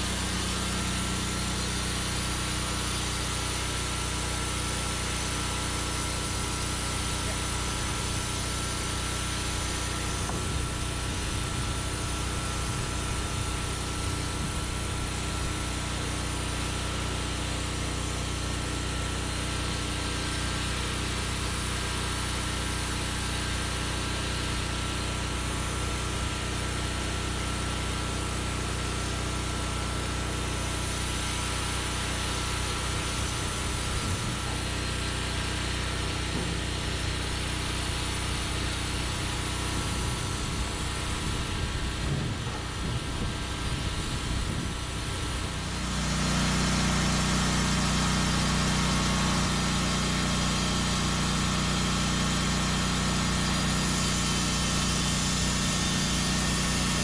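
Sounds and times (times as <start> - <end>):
sawmill engine running: 0.0 - 57.0.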